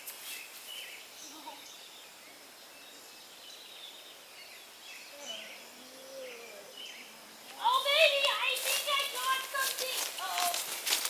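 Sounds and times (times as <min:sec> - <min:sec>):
faint bird chirps: 0:00.2 - 0:07.8.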